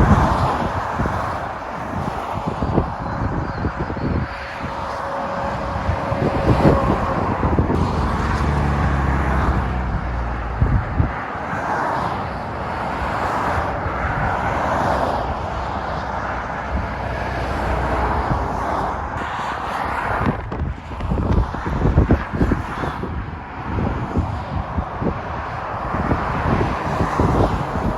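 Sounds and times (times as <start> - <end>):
motorway traffic passing: 0.0 - 27.9
truck engine drone: 2.6 - 14.4.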